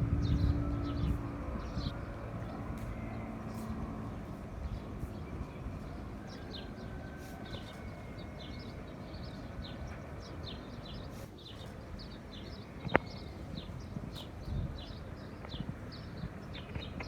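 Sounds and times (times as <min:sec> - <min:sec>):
low rumble: 0:00.0 - 0:05.7
birds chirping: 0:00.0 - 0:17.0.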